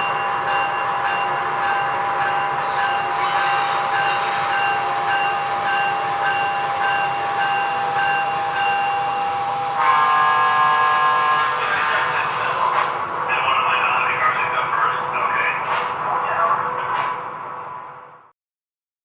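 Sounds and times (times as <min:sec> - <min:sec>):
electric locomotive whine: 0:00.0 - 0:18.3
train horn blast: 0:02.6 - 0:05.4, 0:09.6 - 0:12.5
track rumble: 0:10.6 - 0:18.1.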